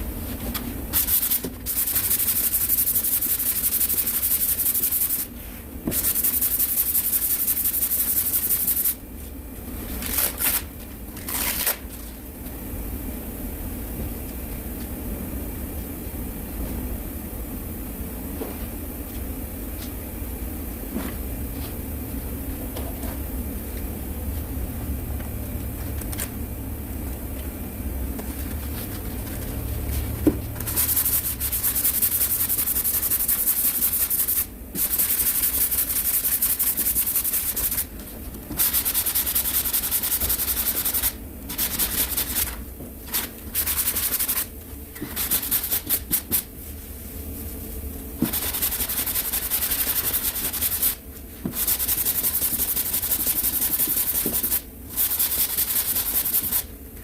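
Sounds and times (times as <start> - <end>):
sandpaper rasping on body filler: 30.7 - 37.9, 38.6 - 46.5, 48.2 - 56.7.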